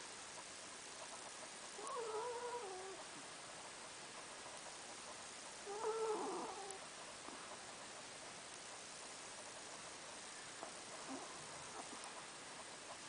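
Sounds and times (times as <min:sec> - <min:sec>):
pet snoring: 0:01.8 - 0:03.0, 0:05.6 - 0:06.8, 0:11.0 - 0:12.1.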